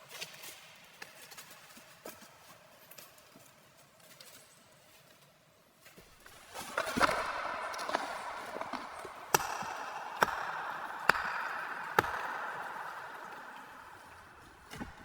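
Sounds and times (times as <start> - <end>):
axe chopping wood: 6.2 - 15.0.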